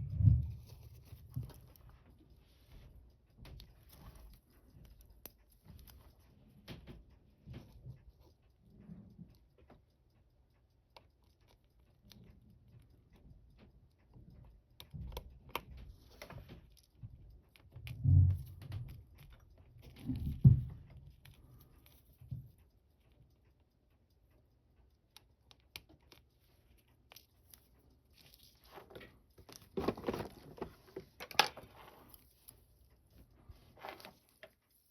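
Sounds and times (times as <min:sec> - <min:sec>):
clicks and taps of small tools: 0:25.1 - 0:32.6.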